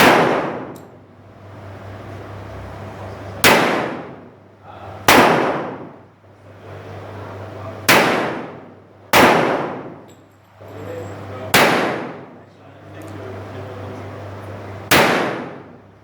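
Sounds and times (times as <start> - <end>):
revolver shots echoing: 0.0 - 1.0, 3.4 - 4.3, 5.1 - 6.0, 7.8 - 10.1, 11.5 - 12.4, 14.9 - 15.8.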